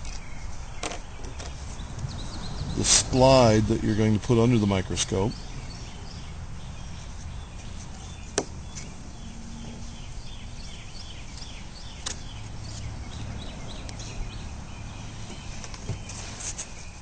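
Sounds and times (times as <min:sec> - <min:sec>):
steady low hum: 0:03.5 - 0:15.6.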